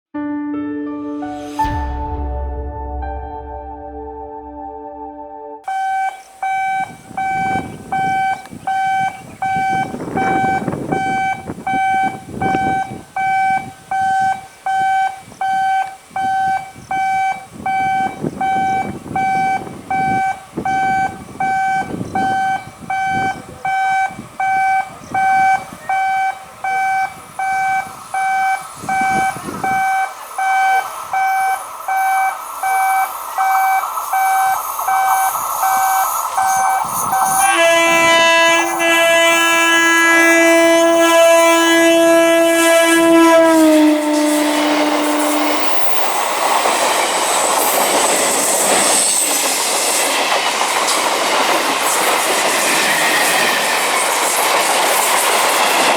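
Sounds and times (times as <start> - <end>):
approaching electric train: 5.6 - 55.9
electronic warning beeps: 5.7 - 38.9.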